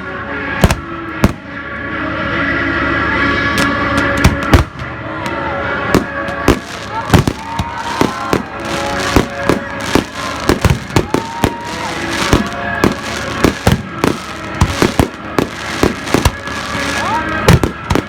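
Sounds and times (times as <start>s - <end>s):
firework bursts and bangs: 0.6s - 1.5s, 3.6s - 5.0s, 5.9s - 18.0s
firework crackling: 6.0s - 18.0s
whistling firework shells: 6.0s - 18.0s.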